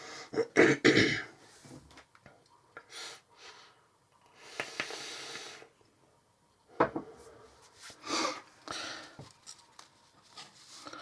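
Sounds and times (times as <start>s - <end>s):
soft rustling and scraping: 7.0s - 11.0s.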